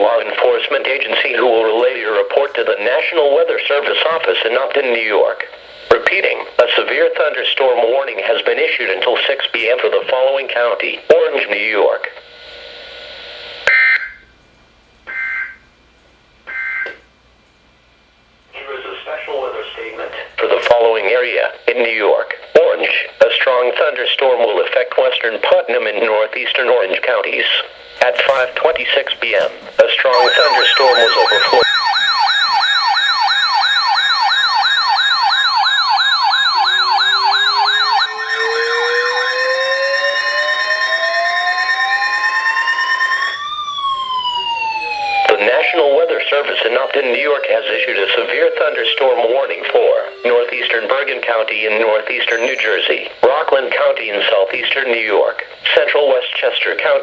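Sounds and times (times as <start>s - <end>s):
radio hiss: 0.0s - 13.7s, 18.5s - 31.7s, 44.5s - 57.0s
electronic siren yelp: 13.7s - 14.3s, 15.1s - 15.7s, 16.5s - 17.1s, 30.1s - 53.4s
digital data tone squawks: 30.1s - 31.9s, 35.1s - 43.4s, 45.3s - 53.6s
rising siren wail: 30.1s - 52.8s.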